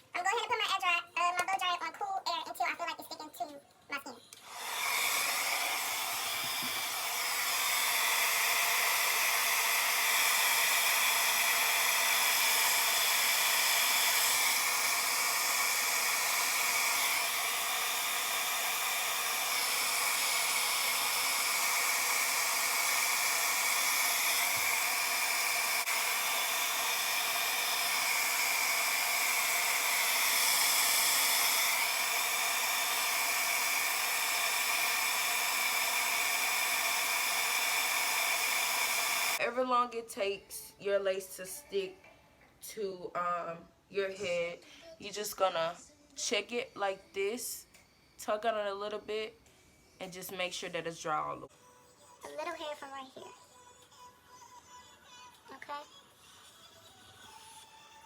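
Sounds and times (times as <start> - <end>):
blow dryer running: 4.4 - 39.4.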